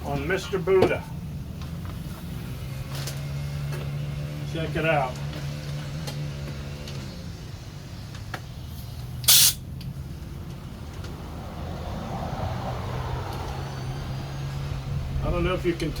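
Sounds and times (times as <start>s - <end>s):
compressed air hiss: 9.2s - 9.6s.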